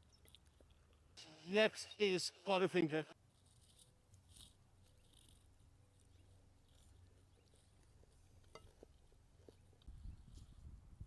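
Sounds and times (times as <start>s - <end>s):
faint chewing crunches: 0.0s - 1.2s, 3.2s - 10.7s.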